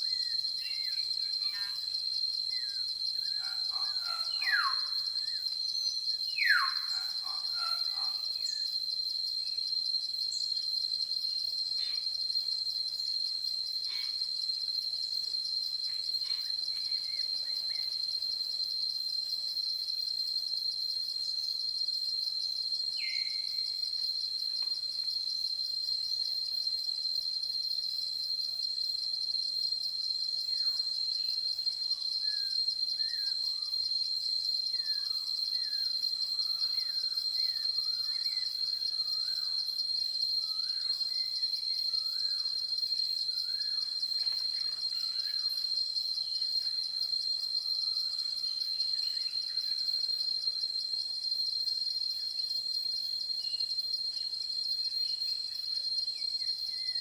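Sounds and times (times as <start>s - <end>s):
crickets trilling: 0.0s - 57.0s.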